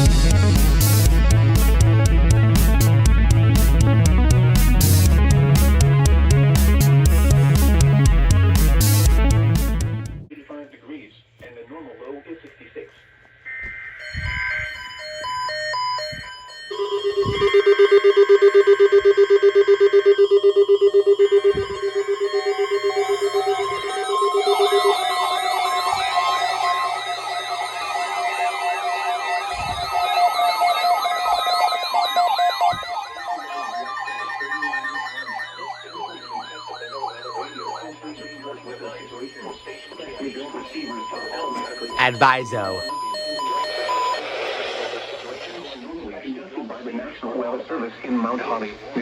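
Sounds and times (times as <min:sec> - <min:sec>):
electronic siren-like wails: 0:13.5 - 0:45.9.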